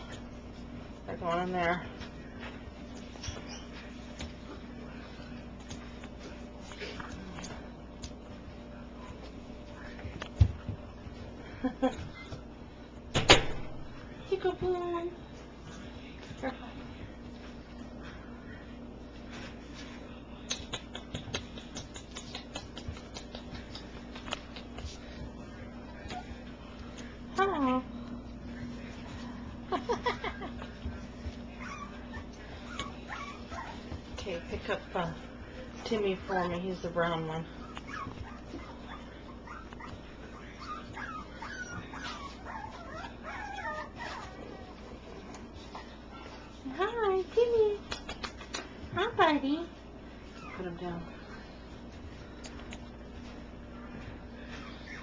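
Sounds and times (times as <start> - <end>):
steady faint hum: 0.0 - 55.0
puppy claws scrabbling: 20.4 - 25.2, 47.8 - 49.0
puppies whimpering: 30.7 - 34.1, 35.9 - 46.4, 50.2 - 51.0, 53.8 - 55.0.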